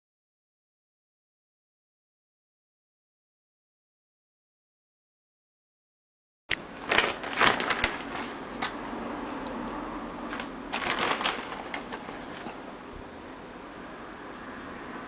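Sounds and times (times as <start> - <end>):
clicks and crackles of handling: 6.5 - 8.8, 10.3 - 12.7.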